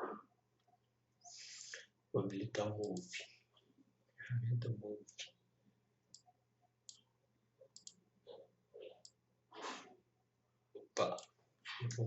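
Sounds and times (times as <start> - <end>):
computer mouse clicks: 2.8 - 3.2, 7.7 - 9.2.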